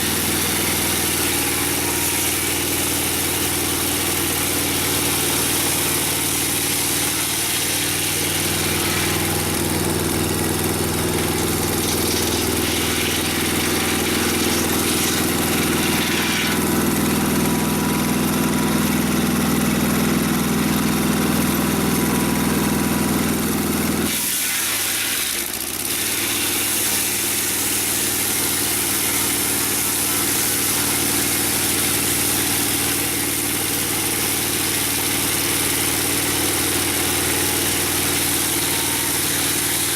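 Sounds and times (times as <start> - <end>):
gasoline engine running: 0.0 - 24.1.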